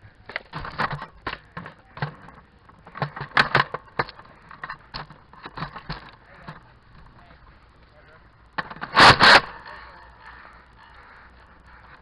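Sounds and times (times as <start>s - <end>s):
toy blasters primed and fired: 8.6s - 9.7s.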